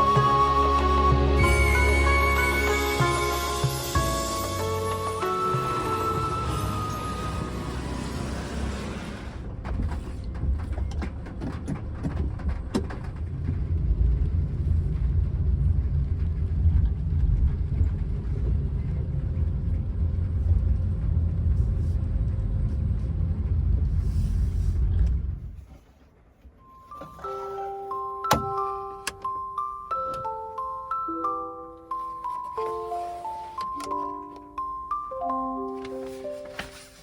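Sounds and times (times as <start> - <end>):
road and engine rumble in van: 0.0 - 37.0.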